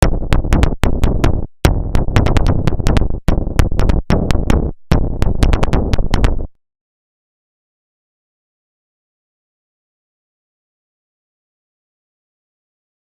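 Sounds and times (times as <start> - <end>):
drum machine beats: 0.0 - 6.6
synthesizer bass line: 0.0 - 6.6.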